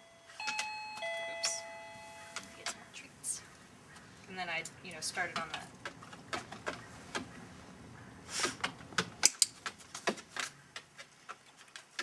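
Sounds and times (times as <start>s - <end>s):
sharp handling clicks and taps: 4.0s - 7.4s, 8.4s - 12.0s.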